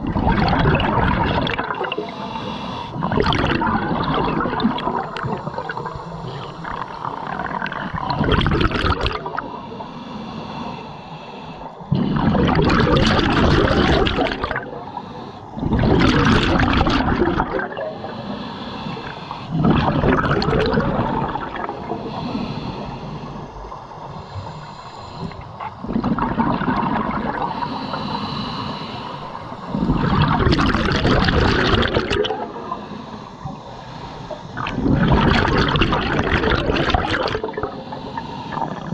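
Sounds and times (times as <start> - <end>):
exhaled bubbles gushing: 0.0 - 2.1, 2.9 - 9.6, 11.9 - 14.9, 15.6 - 18.0, 19.5 - 22.3, 25.2 - 27.6, 29.4 - 32.8, 34.5 - 37.9, 38.5 - 38.9
regulator hissing inhalations: 1.8 - 3.0, 9.4 - 12.2, 14.6 - 15.6, 17.7 - 19.6, 21.4 - 25.8, 27.3 - 29.9, 32.4 - 34.8, 37.2 - 38.9.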